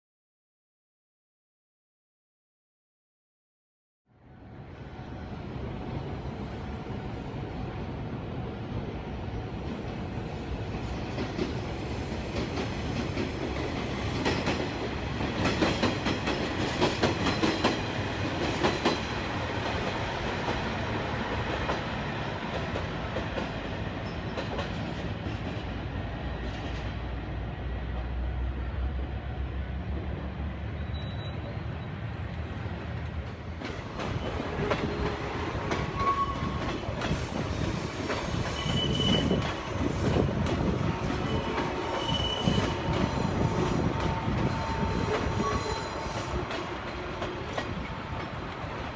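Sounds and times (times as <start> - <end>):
train wheels clacking over rail joints: 11.1 - 19.9, 33.2 - 48.9.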